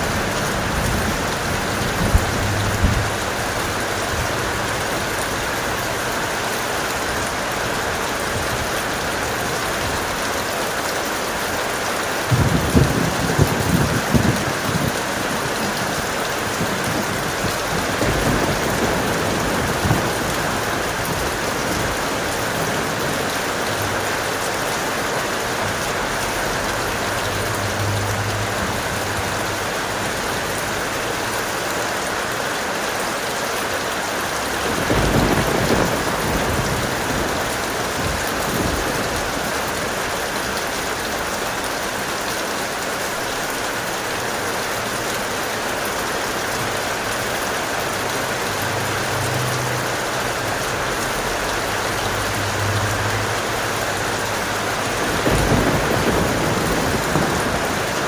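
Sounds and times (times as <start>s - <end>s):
low thunder rumbles: 0.0s - 5.6s, 12.2s - 30.6s, 34.5s - 41.4s, 50.8s - 58.0s
heavy rain hissing: 0.0s - 58.0s.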